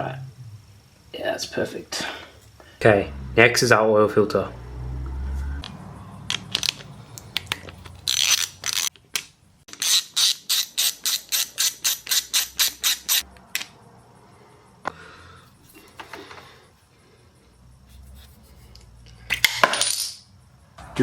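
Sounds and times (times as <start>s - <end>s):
socket ratchet clicking: 9.7s - 13.7s.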